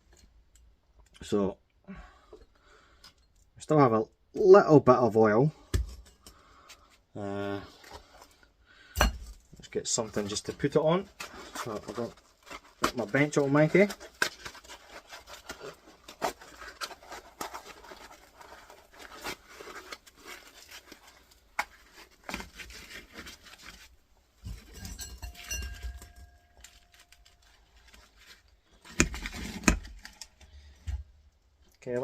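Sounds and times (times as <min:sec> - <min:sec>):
cardboard rustling: 0:10.0 - 0:24.8.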